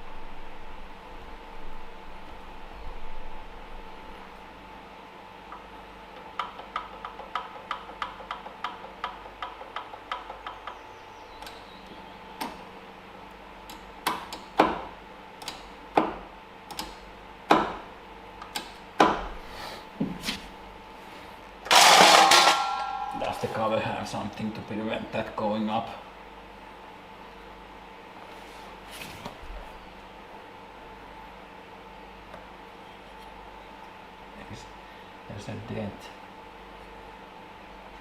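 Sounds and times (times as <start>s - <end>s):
knocks and taps on metal: 5.5s - 10.8s
loud scraping rattle: 21.7s - 23.1s.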